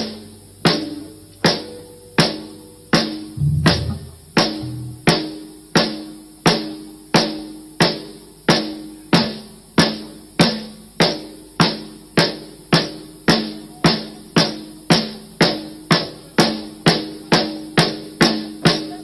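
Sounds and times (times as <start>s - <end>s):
snare drum hits: 3.4s - 5.1s
bass drum kick: 3.4s - 5.2s.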